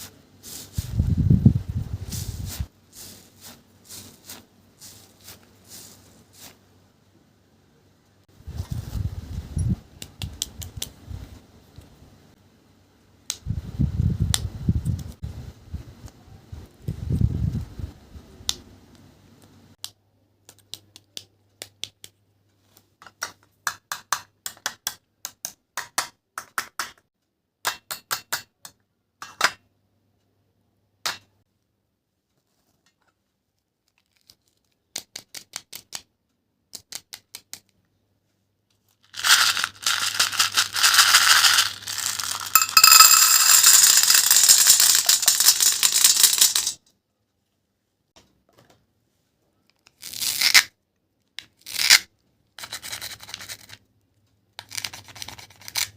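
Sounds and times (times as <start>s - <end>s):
dense crackling tearing noise: 49.9s - 50.8s.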